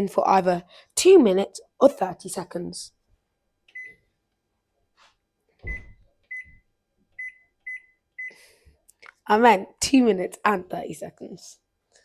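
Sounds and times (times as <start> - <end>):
microwave keypad beeps: 3.7 - 4.0, 5.7 - 6.6, 7.2 - 8.4
low thump: 5.6 - 6.0.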